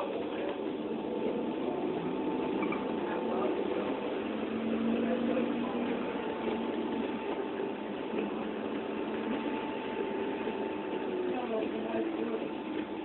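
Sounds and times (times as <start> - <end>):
thin constant whine: 0.0 - 13.0.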